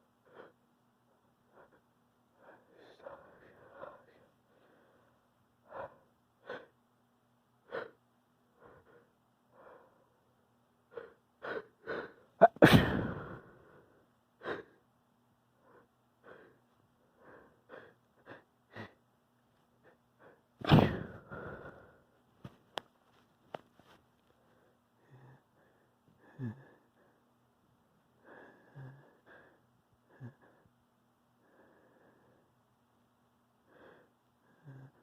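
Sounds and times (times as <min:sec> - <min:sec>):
person sneezing: 0:12.4 - 0:13.4, 0:20.6 - 0:21.3.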